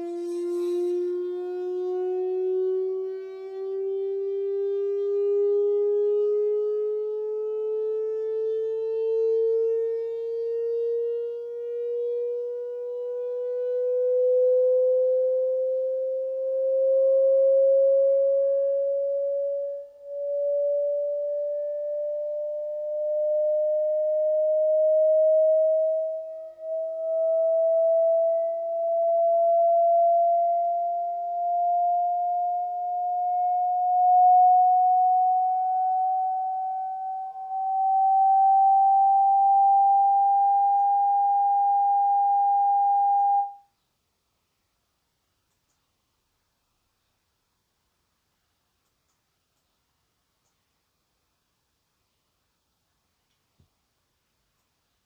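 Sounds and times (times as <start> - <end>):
faint higher tones: 0.0 - 4.0, 18.9 - 43.8
rising sine sweep test tone: 0.0 - 43.8.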